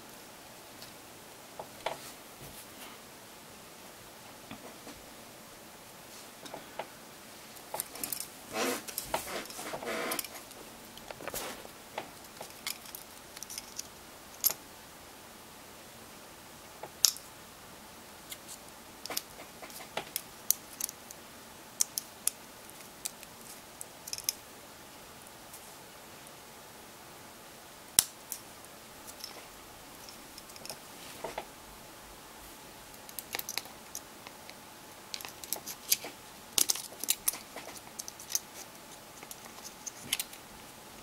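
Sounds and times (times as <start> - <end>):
rustling handling noise: 6.1 - 14.6, 28.2 - 31.6, 32.4 - 41.0
small parts clicking and tapping: 7.6 - 11.4, 12.0 - 14.6, 16.8 - 17.3, 18.3 - 21.2, 21.8 - 24.4, 28.0 - 31.5, 32.9 - 40.4.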